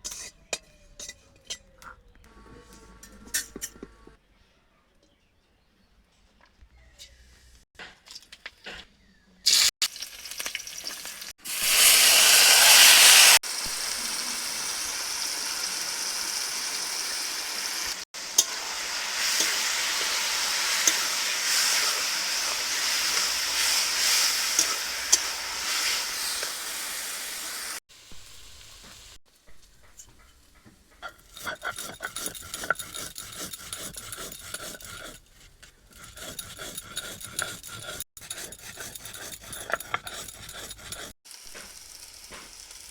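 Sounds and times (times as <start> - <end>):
spoon scraping pan: 0.0 - 1.6, 18.2 - 26.6, 31.0 - 41.1
food sizzling in hot oil: 9.5 - 29.2, 41.2 - 42.9.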